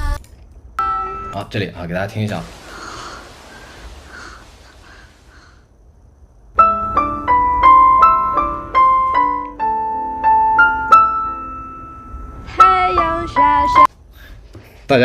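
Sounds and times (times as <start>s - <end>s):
simple piano melody: 6.6s - 13.9s.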